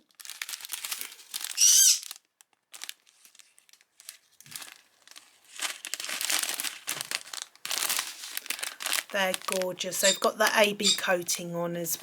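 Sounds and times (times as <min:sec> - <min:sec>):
plastic packaging crinkling: 0:00.0 - 0:12.0
high-pitched bending call: 0:10.0 - 0:11.1.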